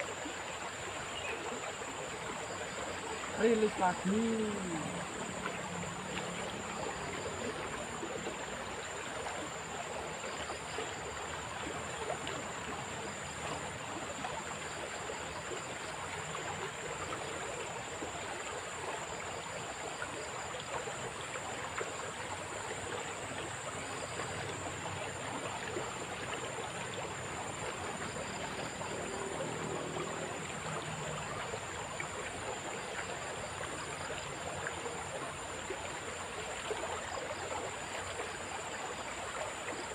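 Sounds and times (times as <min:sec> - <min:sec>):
river water rushing over stones: 0:00.0 - 0:39.9.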